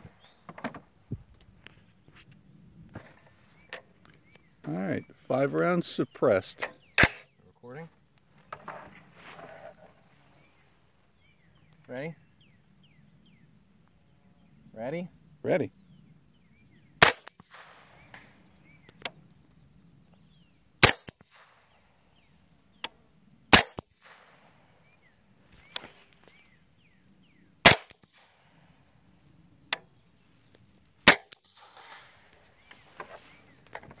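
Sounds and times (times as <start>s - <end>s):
suppressed rifle shots: 6.6s - 7.3s, 17.0s - 18.8s, 20.8s - 22.4s, 23.5s - 25.0s, 27.6s - 28.6s, 31.0s - 32.6s.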